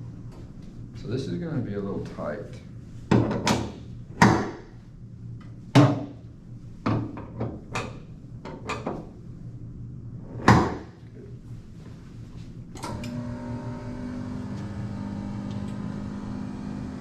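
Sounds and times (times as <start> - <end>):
sharp knocks and clunks: 3.1 - 4.6, 10.4 - 10.9.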